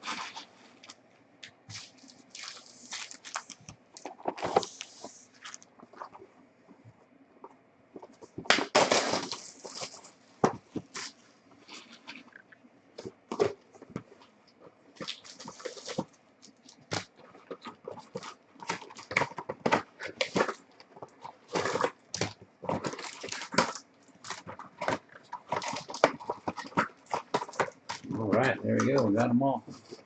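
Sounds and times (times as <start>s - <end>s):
cards being handled: 0.1s - 6.2s
foil wrappers tearing and crinkling: 1.7s - 6.1s, 8.5s - 10.2s, 15.0s - 28.2s.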